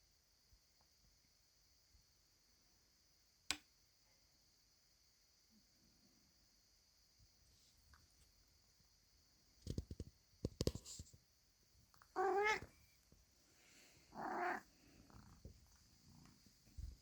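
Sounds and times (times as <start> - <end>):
cat calling: 12.1 - 12.7, 14.1 - 14.6.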